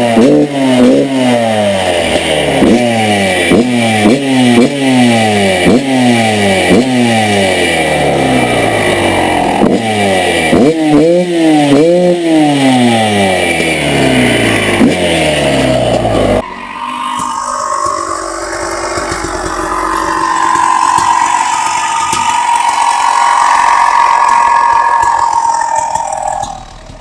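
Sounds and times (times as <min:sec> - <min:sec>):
two-stroke engine revving: 0:00.0 - 0:16.5, 0:17.2 - 0:27.0.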